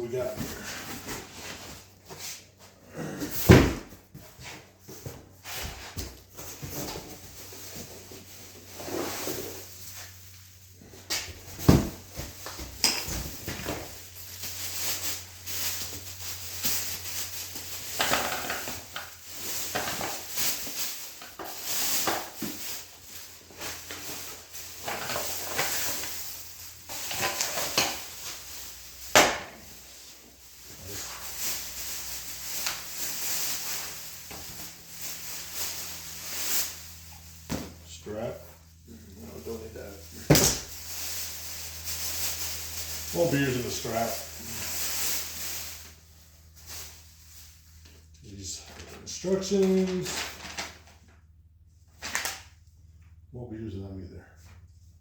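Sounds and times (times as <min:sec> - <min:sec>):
packaging rustling: 0:06.2 - 0:37.6, 0:39.3 - 0:48.0, 0:48.7 - 0:51.1.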